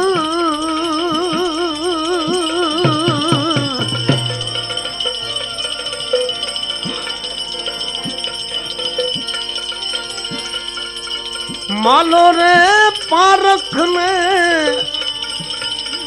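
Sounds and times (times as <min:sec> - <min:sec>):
high ringing tone: 0:00.0 - 0:16.0
drum strokes: 0:02.2 - 0:11.7
sung note with vibrato: 0:02.6 - 0:07.0.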